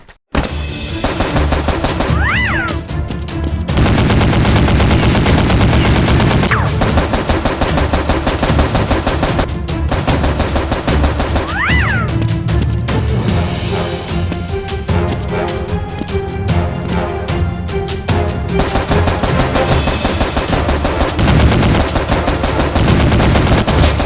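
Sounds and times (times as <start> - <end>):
background music: 0.4 - 24.0
automatic gunfire: 1.0 - 2.5, 3.8 - 11.7, 18.6 - 24.0.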